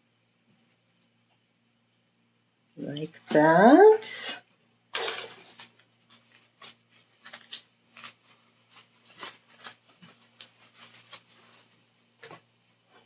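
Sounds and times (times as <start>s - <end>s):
packaging rustling and crinkling: 5.0s - 12.8s.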